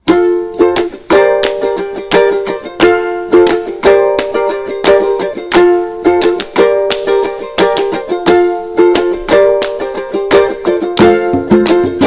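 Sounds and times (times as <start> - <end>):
bouncy plucked string music: 0.0 - 12.0.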